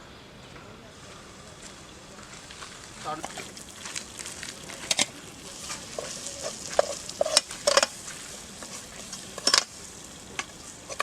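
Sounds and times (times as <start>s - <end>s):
low sizzle: 0.0s - 11.0s
spoon scraping a pan: 4.8s - 11.0s.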